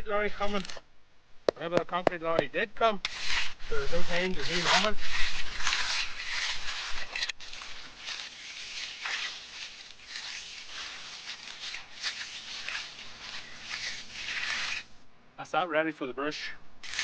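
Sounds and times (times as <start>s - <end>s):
trowel scraping wet concrete: 3.0s - 15.0s.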